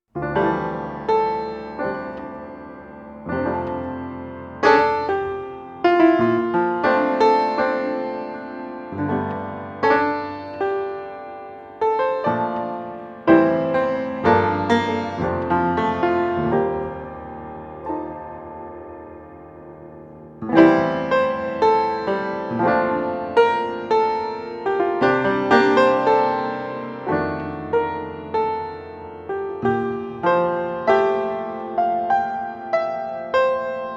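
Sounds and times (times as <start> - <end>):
gentle piano music: 0.1 - 33.9.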